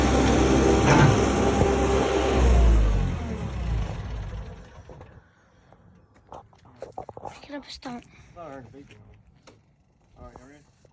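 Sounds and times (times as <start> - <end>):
skid steer engine running: 0.0 - 5.2.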